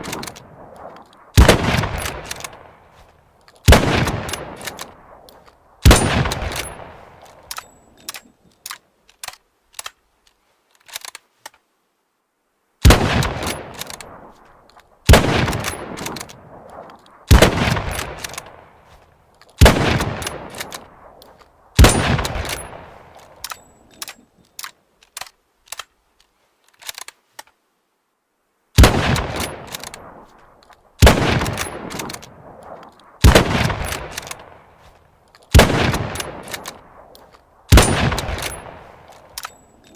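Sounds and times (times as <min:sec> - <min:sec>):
rifle shots echoing: 0:00.0 - 0:03.0, 0:03.6 - 0:07.8, 0:12.8 - 0:14.4, 0:15.0 - 0:18.9, 0:19.6 - 0:23.8, 0:28.8 - 0:34.9, 0:35.5 - 0:39.9
rifle bolt clicks: 0:00.0 - 0:11.6, 0:13.2 - 0:27.6, 0:28.8 - 0:39.9.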